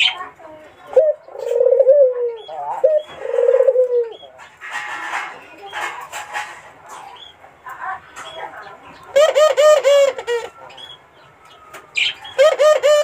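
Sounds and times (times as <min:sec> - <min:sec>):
dove cooing: 0:00.9 - 0:04.3, 0:09.1 - 0:10.8, 0:12.0 - 0:13.0.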